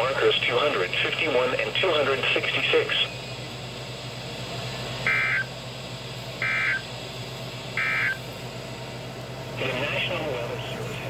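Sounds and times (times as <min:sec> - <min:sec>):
steady low hum: 0:00.0 - 0:11.0
buzzy two-tone data warbles: 0:05.0 - 0:05.5, 0:06.4 - 0:06.8, 0:07.8 - 0:08.2.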